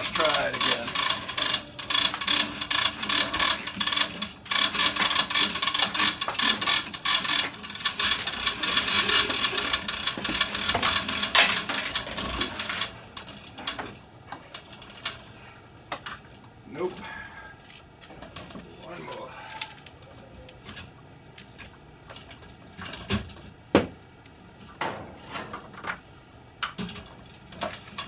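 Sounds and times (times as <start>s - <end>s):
hose reel ratchet clicking: 0.0s - 13.8s.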